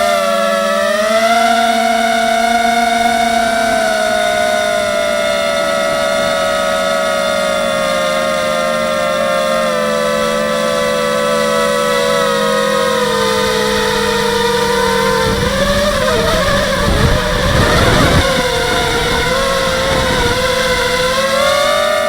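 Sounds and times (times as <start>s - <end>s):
quadcopter propellers whining: 0.0s - 22.0s.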